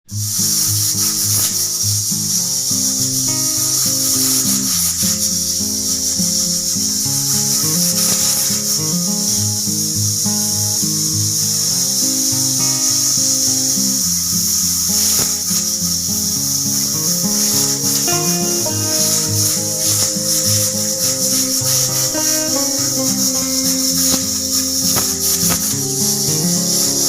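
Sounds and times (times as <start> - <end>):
pressure cooker hissing steam: 0.1 - 27.0
background music with melody: 5.6 - 27.0.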